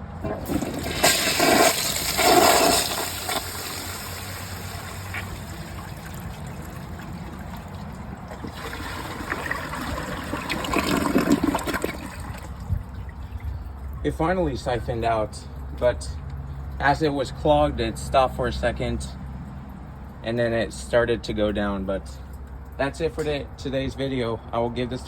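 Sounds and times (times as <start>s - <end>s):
toilet flushing: 0.1s - 12.6s.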